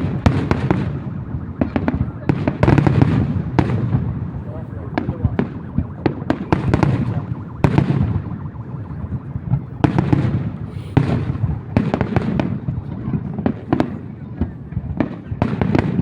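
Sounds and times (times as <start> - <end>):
low rumble of booms: 0.0 - 13.7
fireworks bangs and crackles: 0.0 - 16.0.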